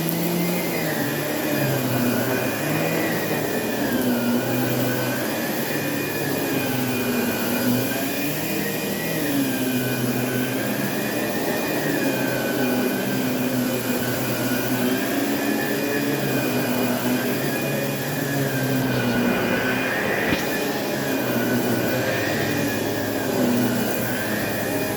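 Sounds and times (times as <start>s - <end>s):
vacuum cleaner on carpet: 0.0s - 24.9s.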